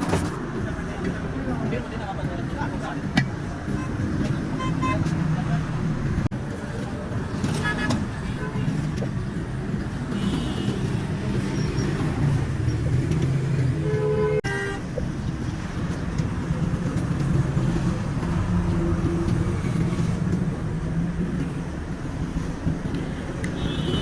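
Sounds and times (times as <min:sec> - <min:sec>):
road traffic engine drone: 0:00.0 - 0:24.0
vehicle horn honking: 0:04.6 - 0:05.1, 0:10.1 - 0:10.9, 0:13.8 - 0:14.8, 0:23.6 - 0:24.0.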